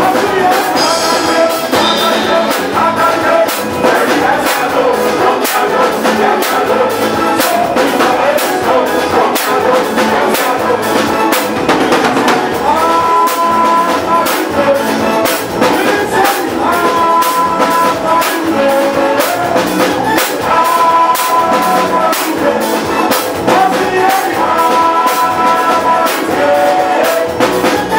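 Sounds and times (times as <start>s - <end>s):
brass horns sustained chords: 0.0s - 13.3s
band playing: 0.0s - 27.9s
driving drum beat: 0.0s - 27.9s.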